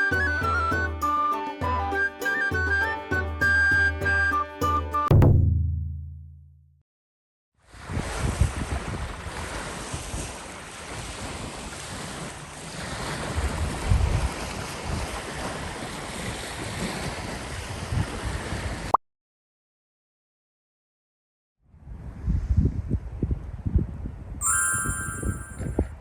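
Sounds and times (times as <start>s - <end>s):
wind buffeting microphone: 7.8s - 10.3s, 13.4s - 15.1s, 21.8s - 24.4s.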